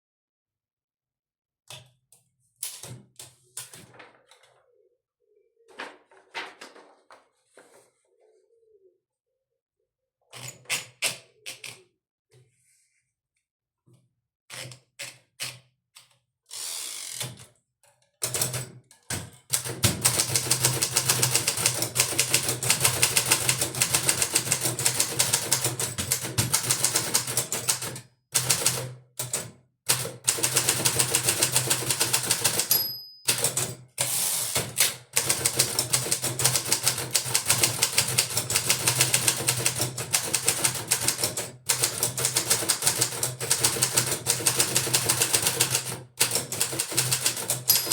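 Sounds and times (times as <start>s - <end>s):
typewriter keystrokes: 19.5s - 47.9s
typewriter margin bell: 30.4s - 34.4s, 41.8s - 47.9s.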